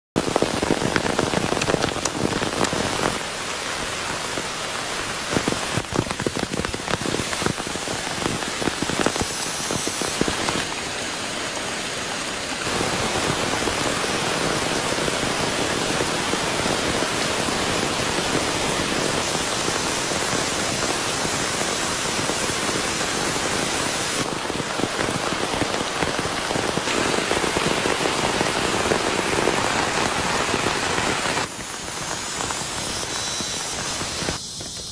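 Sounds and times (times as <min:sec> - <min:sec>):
close raindrops spattering: 0:00.2 - 0:34.9
heavy rain falling: 0:00.2 - 0:34.9.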